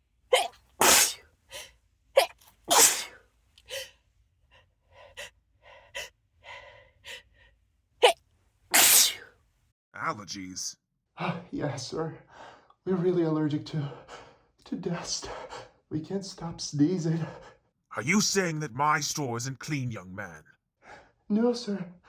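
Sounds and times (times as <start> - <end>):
person sneezing hard: 0.4 - 1.2, 2.2 - 3.2, 8.0 - 9.3
quick catching breaths: 0.4 - 3.9, 4.5 - 9.3.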